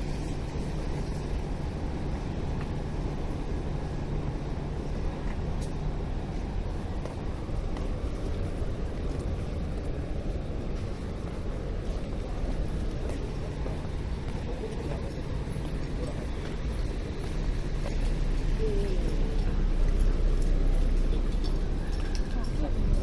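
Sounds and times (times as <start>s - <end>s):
faint voices of passers-by: 0.0s - 23.0s
road traffic rumble: 0.0s - 23.0s.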